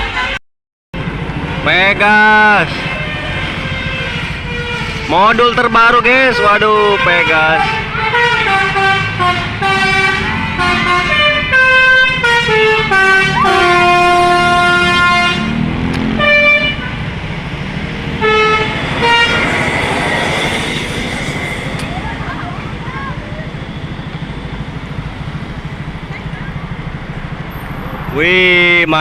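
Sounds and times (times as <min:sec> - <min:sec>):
bus engine: 0:00.0 - 0:00.4, 0:01.0 - 0:29.0
multi-tone bus horn: 0:00.0 - 0:00.4, 0:02.2 - 0:17.3, 0:18.0 - 0:25.0
traffic noise: 0:00.0 - 0:00.4, 0:01.0 - 0:29.0.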